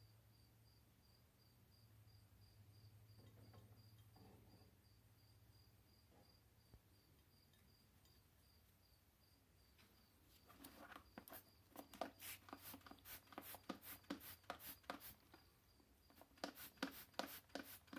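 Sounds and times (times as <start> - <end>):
cricket chirping: 0.0 - 17.9
soft rustles: 9.8 - 15.4.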